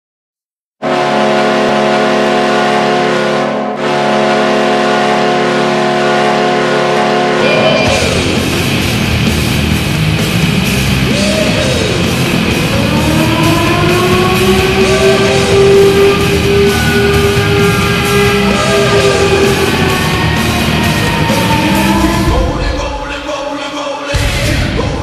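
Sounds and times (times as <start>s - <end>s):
hard rock with distorted guitar: 7.4s - 23.0s.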